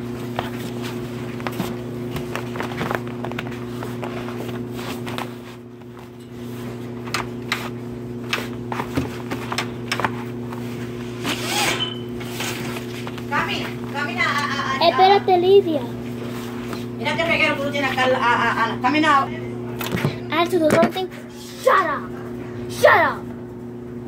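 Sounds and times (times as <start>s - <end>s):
low electrical hum: 0.0s - 24.0s
packaging being handled: 0.3s - 6.2s.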